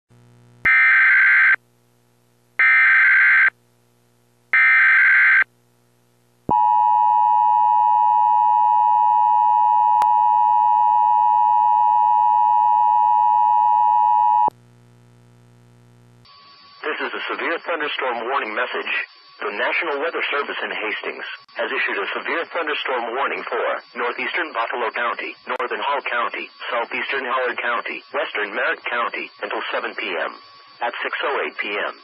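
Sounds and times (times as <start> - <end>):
steady attention tone: 6.5 - 14.6
digital data bursts: 16.3 - 32.0.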